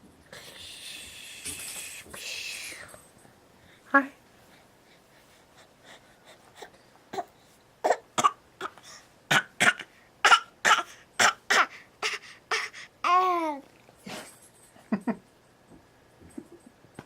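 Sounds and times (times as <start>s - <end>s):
baby babbling: 9.7s - 13.6s.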